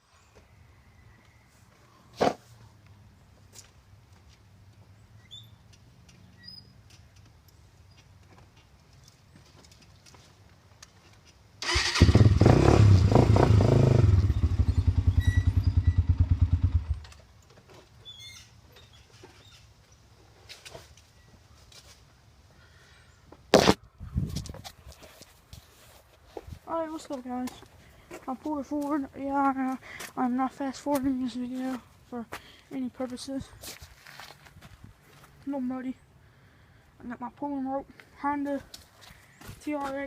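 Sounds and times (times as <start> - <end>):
quad engine thumping idle: 12.1 - 17.1.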